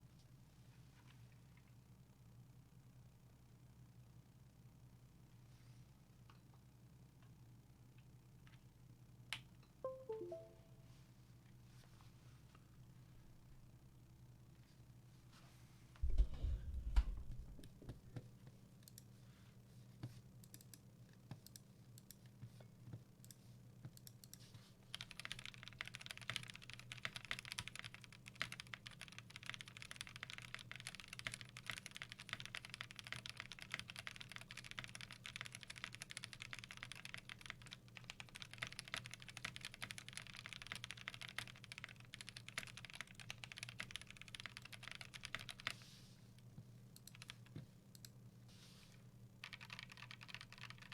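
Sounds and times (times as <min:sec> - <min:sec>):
typing on mechanical keyboard: 0:24.9 - 0:45.8, 0:47.0 - 0:47.6, 0:49.4 - 0:50.9.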